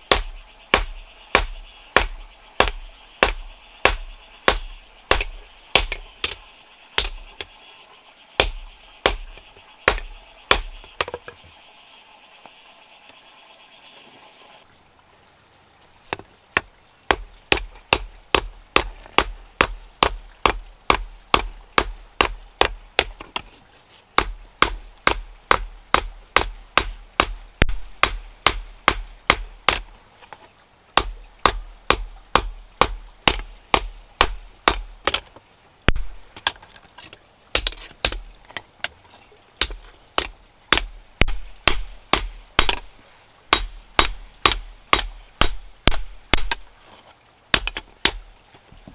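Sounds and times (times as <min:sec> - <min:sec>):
hammer forging metal: 0:40.2 - 0:42.9.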